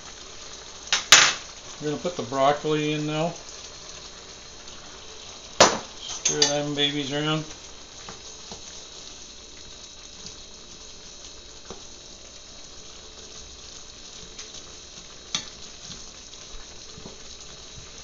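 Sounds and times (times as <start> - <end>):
stir fry sizzling in a pan: 0.0 - 18.0.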